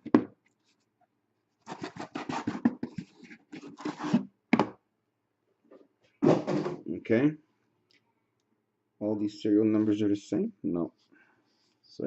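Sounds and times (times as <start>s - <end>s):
cardboard boxes scraping: 1.6s - 4.3s.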